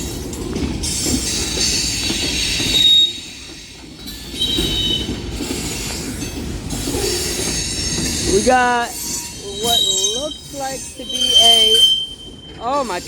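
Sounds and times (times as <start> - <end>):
metal brake squealing: 2.3 - 3.6, 4.2 - 5.2, 6.9 - 13.0.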